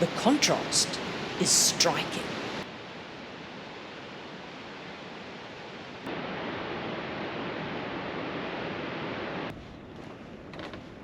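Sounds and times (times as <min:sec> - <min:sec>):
waterfall rushing: 0:00.0 - 0:02.6.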